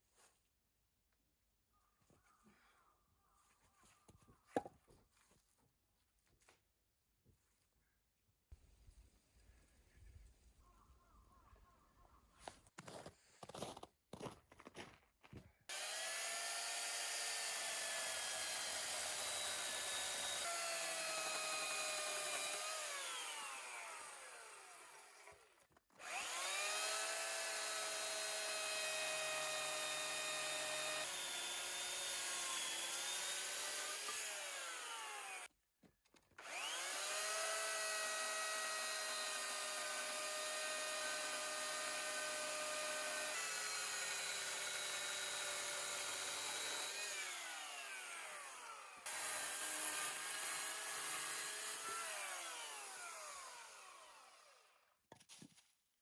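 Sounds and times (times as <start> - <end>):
electric drill boring into wood: 15.7 - 35.5, 36.4 - 54.8.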